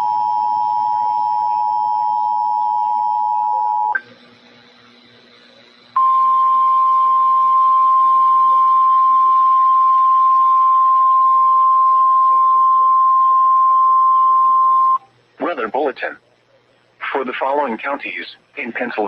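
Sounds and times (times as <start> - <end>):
faint radio hiss: 0.0 - 19.0
steady alarm beep: 6.0 - 15.0.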